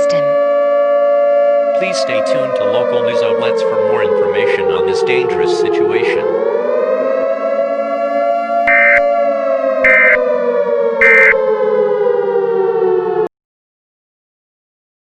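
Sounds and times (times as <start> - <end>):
siren wailing: 0.0 - 13.3
screeching digital data bursts: 8.7 - 9.1, 9.9 - 10.2, 11.0 - 11.4.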